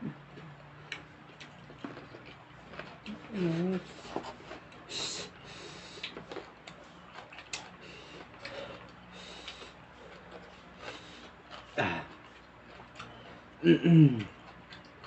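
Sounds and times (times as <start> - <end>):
chewing: 0.3 - 15.0.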